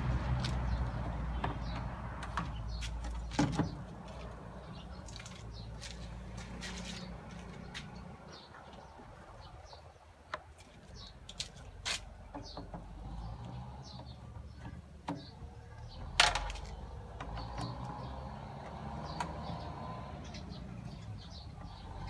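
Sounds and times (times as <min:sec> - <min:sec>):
bird chirping: 0:12.3 - 0:22.0.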